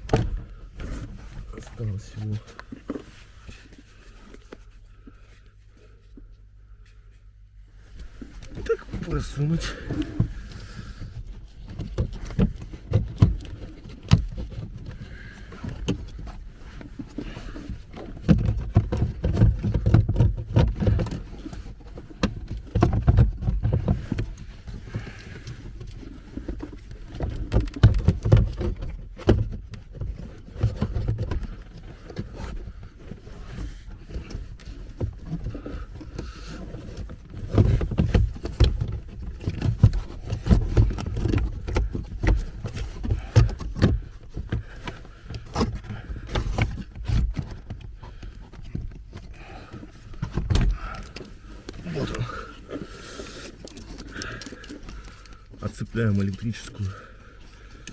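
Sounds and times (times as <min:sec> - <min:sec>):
low rumbling handling noise: 0:00.0 - 0:57.9
plastic knocks and clicks: 0:18.0 - 0:21.3, 0:22.2 - 0:32.2, 0:37.0 - 0:49.2.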